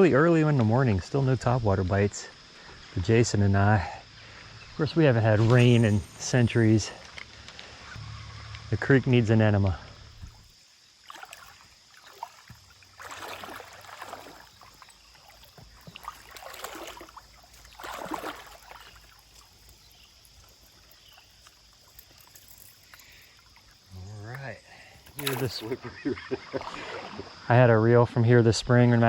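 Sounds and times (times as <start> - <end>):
faint stream flowing: 9.6 - 28.0
water sloshing from wading: 10.2 - 24.1, 25.0 - 27.4.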